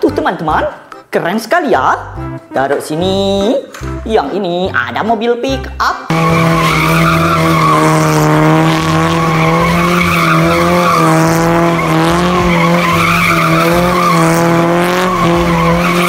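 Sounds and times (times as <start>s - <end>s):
engine at high revs: 6.1s - 16.0s
screechy rough noise: 6.1s - 16.0s.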